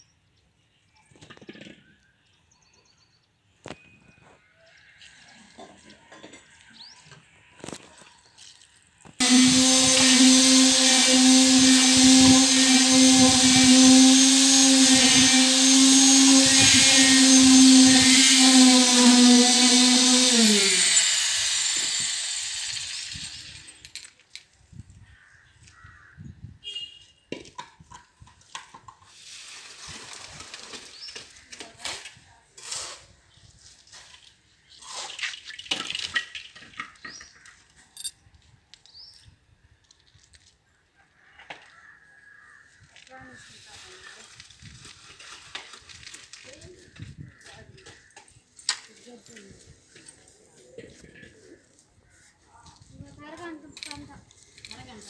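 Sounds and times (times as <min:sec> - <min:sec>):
high-speed electric motor whine: 0:09.2 - 0:23.7.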